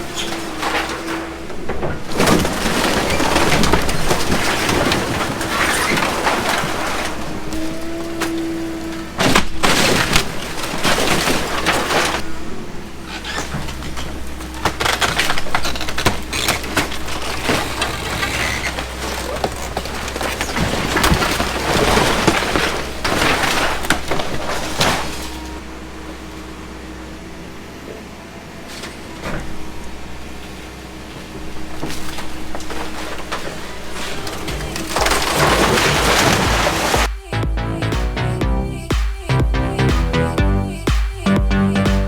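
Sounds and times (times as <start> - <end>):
wood cracking and splintering: 0.0 - 25.6, 31.1 - 37.3
excavator engine humming: 0.0 - 42.0.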